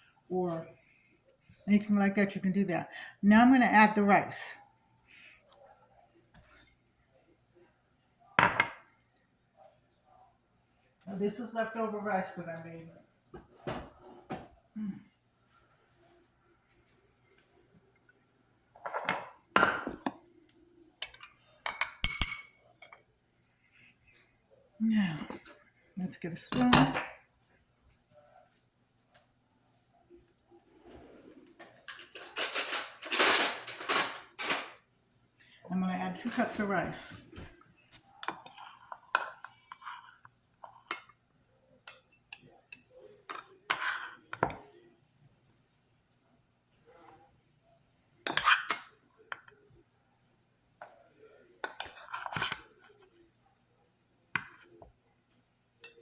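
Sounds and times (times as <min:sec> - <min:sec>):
dishes scraping and shuffling: 0:13.3 - 0:14.6, 0:18.8 - 0:20.4, 0:21.0 - 0:23.1, 0:30.7 - 0:34.8, 0:36.1 - 0:41.2, 0:41.9 - 0:44.7, 0:48.2 - 0:49.7, 0:50.8 - 0:53.2
metallic clinks of utensils: 0:21.0 - 0:23.0, 0:31.9 - 0:34.8.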